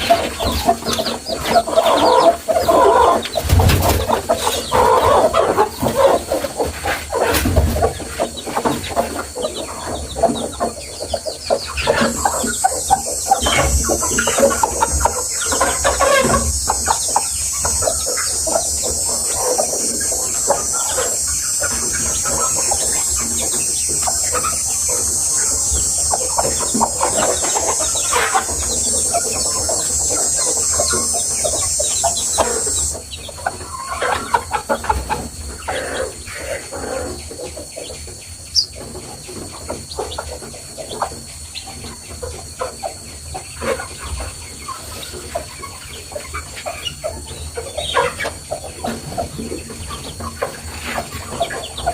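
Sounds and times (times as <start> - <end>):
steady high hiss: 0.0 - 37.1
chickens clucking: 0.0 - 51.9.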